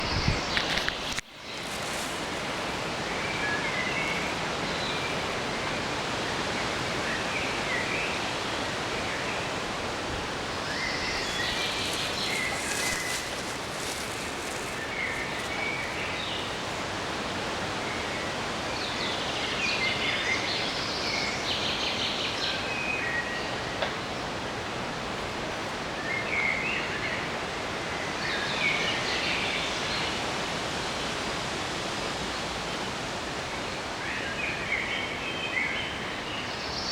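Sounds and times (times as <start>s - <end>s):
steady rushing background noise: 0.0s - 5.8s, 9.0s - 17.9s
birds singing: 10.4s - 16.8s.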